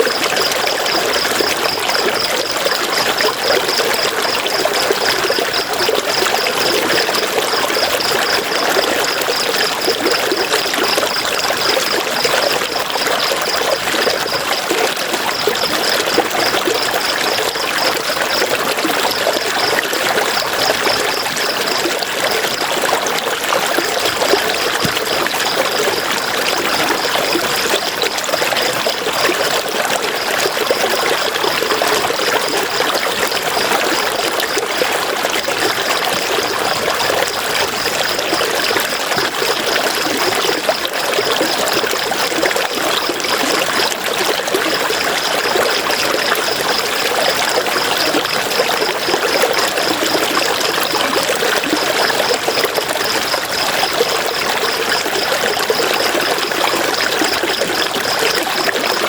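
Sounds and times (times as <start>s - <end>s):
river water flowing over stones: 0.0s - 59.0s.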